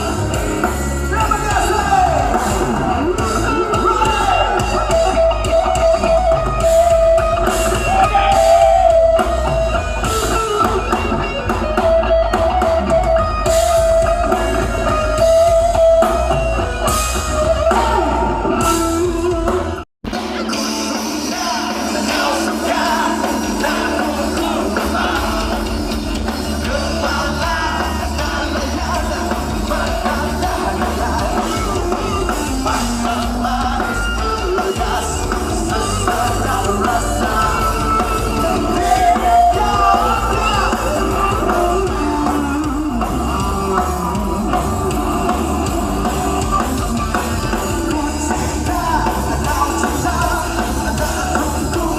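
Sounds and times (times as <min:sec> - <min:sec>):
drum kit: 0:00.0 - 0:51.9
electric guitar: 0:00.0 - 0:51.9
person singing: 0:20.2 - 0:51.9.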